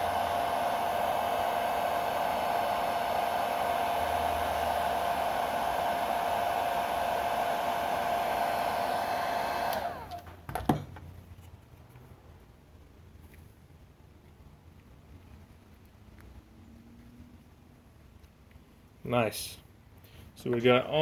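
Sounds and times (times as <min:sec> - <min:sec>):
hot-air blower whining: 0:00.0 - 0:10.3.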